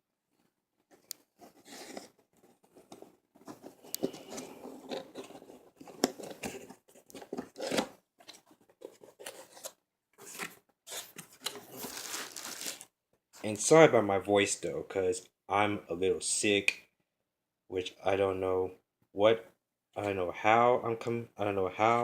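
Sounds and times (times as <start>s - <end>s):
packaging scraping: 3.4s - 12.9s
packaging being cut: 10.9s - 12.8s
packaging ripping: 10.9s - 12.9s.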